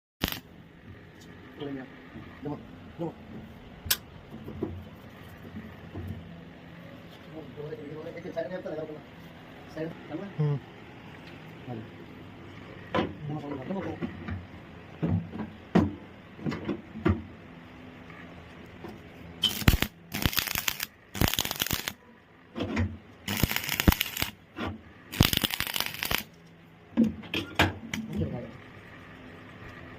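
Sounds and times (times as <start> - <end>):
arc welding crackling sizzle: 0.2 - 0.5, 19.4 - 22.0, 23.2 - 24.5, 25.1 - 26.5.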